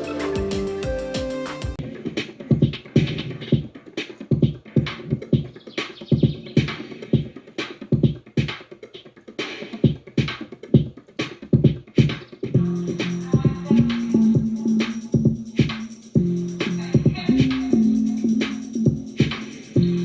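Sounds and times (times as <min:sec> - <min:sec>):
crisp high percussion: 0:00.0 - 0:01.9, 0:12.5 - 0:20.0
deep kick drums: 0:11.5 - 0:20.0.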